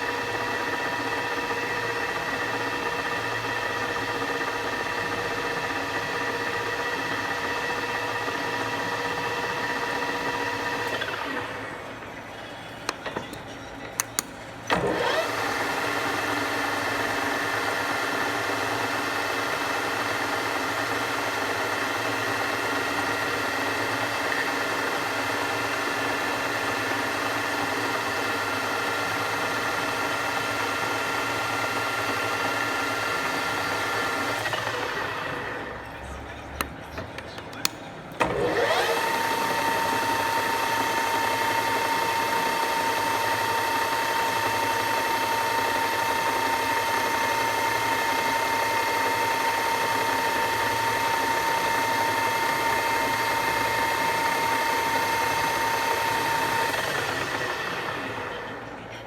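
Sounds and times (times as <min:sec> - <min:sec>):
milling machine whining: 0:00.0 - 0:59.0
sharp clicks: 0:12.8 - 0:14.4.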